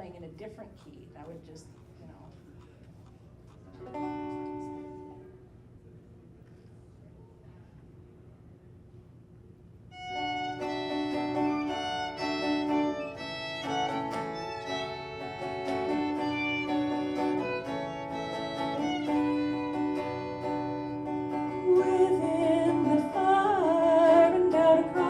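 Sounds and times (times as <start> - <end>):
picked acoustic guitar: 3.8 - 5.3, 10.0 - 25.0
fiddle playing long notes: 9.9 - 25.0.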